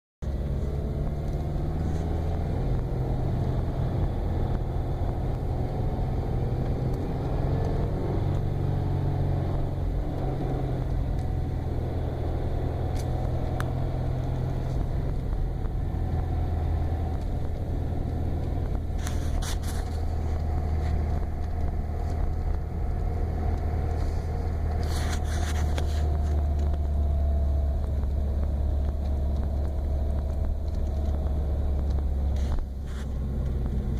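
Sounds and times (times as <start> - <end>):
car engine low drone: 0.2 - 33.9
scratchy rasping noise: 18.9 - 21.3, 23.9 - 26.7.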